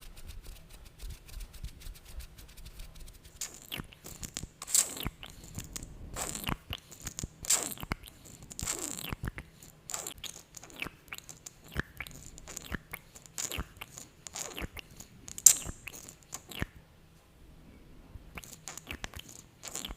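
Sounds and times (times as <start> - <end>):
wet lip smacks and clicks: 3.3 - 16.8, 18.3 - 19.9.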